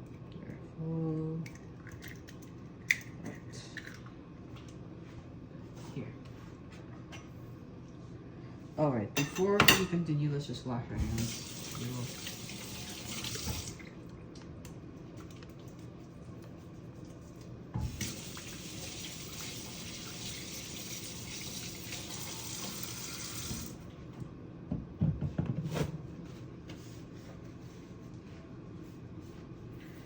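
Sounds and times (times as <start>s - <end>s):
sink tap running: 11.1s - 13.8s, 17.8s - 23.8s.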